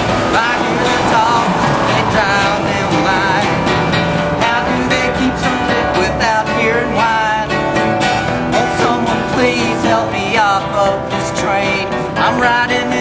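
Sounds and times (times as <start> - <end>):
wavering melody line: 0.0 - 7.0
acoustic guitar strumming: 0.0 - 13.0.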